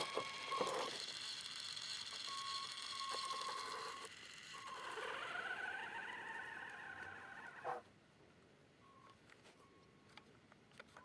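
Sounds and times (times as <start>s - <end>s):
small electric motor whining: 0.0s - 7.8s.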